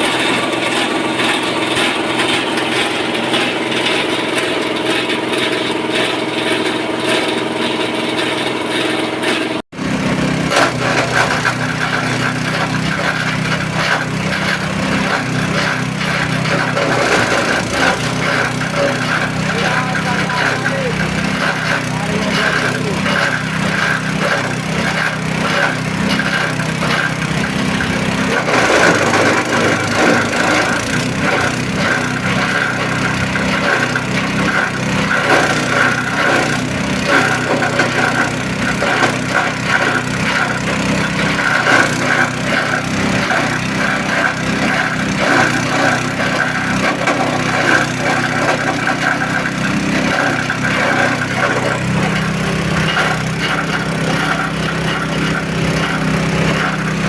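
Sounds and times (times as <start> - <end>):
machine motor hum: 0.0 - 57.0
crackling shredding noise: 9.8 - 57.0.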